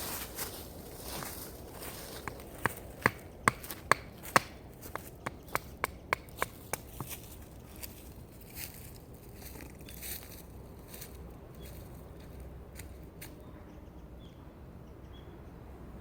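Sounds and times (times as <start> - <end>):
sharp knocks: 2.2 - 7.2.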